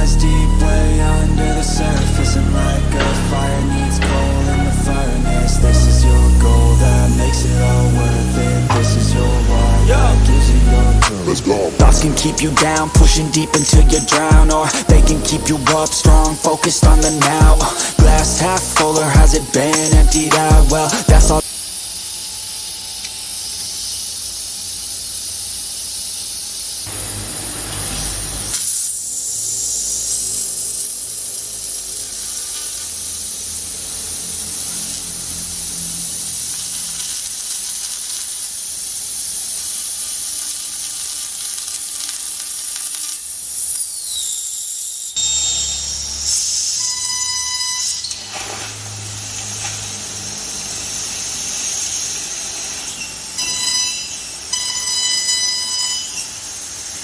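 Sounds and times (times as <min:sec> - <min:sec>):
low machine rumble: 0:00.0 - 0:14.0
laser cutter gas jet hissing: 0:00.0 - 0:57.0.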